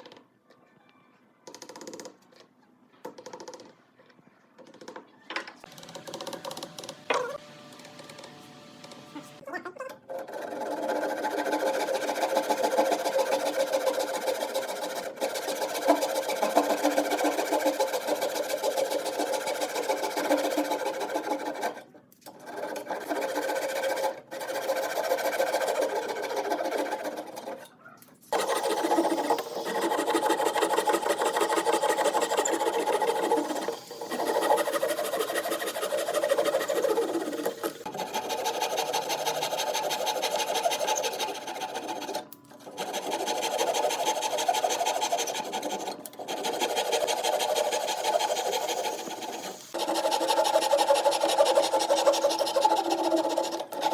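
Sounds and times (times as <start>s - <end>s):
power tool running: 5.7s - 9.4s, 28.3s - 39.0s.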